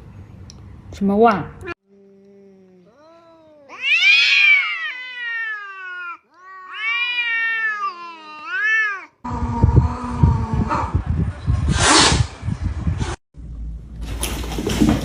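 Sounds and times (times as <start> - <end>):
cat meowing: 2.9 - 9.2.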